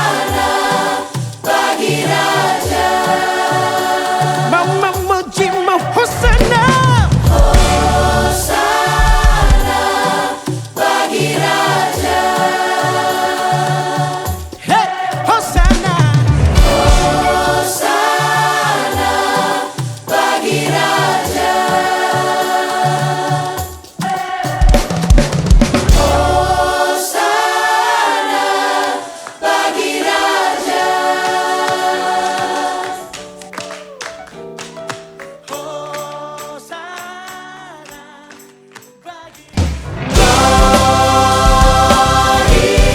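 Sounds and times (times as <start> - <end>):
gospel choir with band: 0.0 - 42.9
drums and bass: 6.0 - 9.9, 15.5 - 17.7, 24.4 - 26.7, 39.6 - 42.9.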